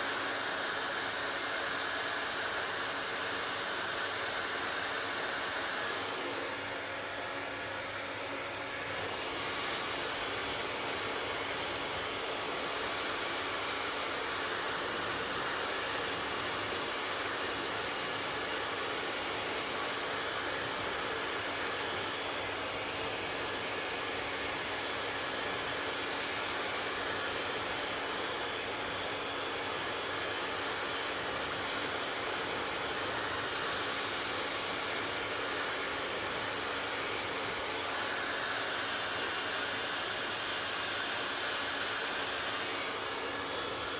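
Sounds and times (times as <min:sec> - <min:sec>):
hair dryer running: 0:00.0 - 0:43.9.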